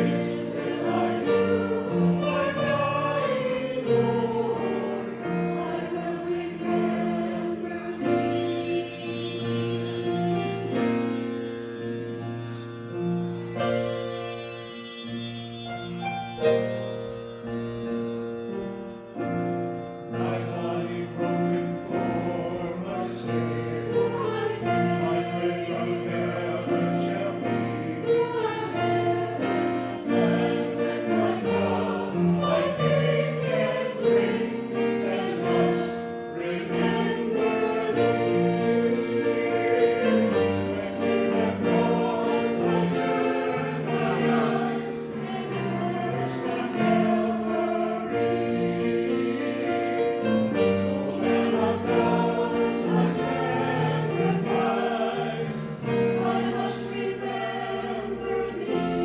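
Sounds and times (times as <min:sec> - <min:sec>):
handbell choir ringing chords: 0:00.0 - 0:59.0.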